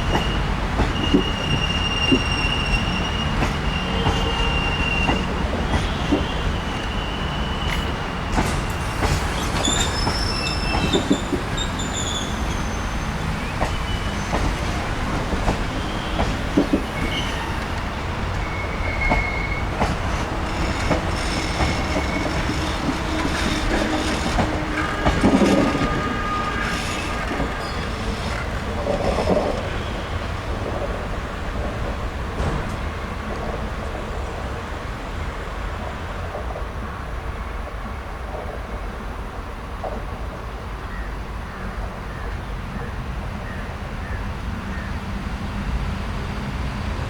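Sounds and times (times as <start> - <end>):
wheel squeals: 0.0 - 30.4
train coaches rumbling past: 0.0 - 47.0.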